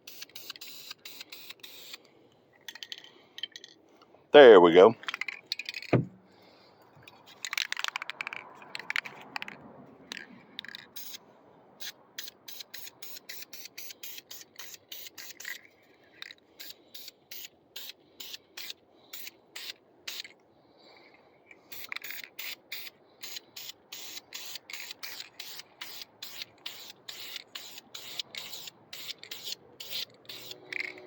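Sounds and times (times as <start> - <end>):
spray paint can hissing: 0.0 - 2.0, 10.6 - 11.2, 11.8 - 15.6, 16.6 - 20.3, 21.7 - 31.0.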